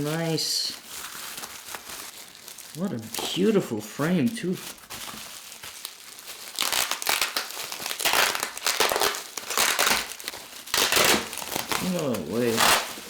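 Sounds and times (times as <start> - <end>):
packaging wrap crinkling: 0.0 - 13.0.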